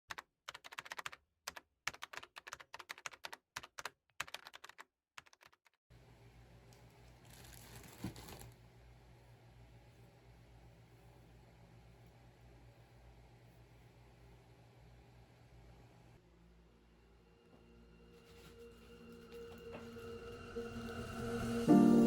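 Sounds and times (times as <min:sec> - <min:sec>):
keyboard typing: 0:00.1 - 0:05.8.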